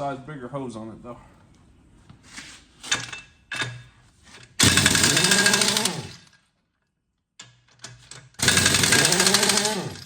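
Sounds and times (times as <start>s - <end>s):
pneumatic impact wrench hammering: 4.5s - 6.3s, 7.8s - 10.0s.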